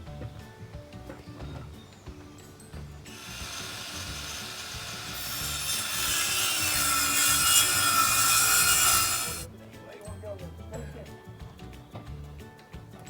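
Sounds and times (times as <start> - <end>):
wood rasping: 3.0 - 9.5.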